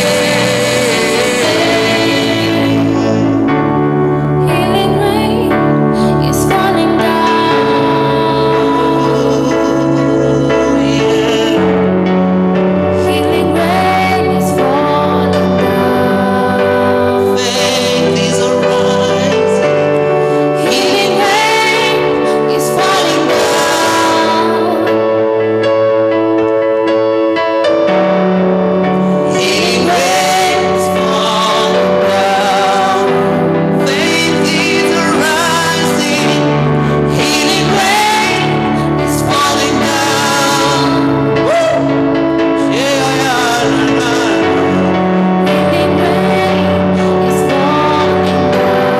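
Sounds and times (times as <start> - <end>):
bass line: 0.0 - 12.6
held keyboard chords: 0.0 - 48.9
woman singing: 4.2 - 11.8, 12.9 - 25.4, 42.6 - 48.9.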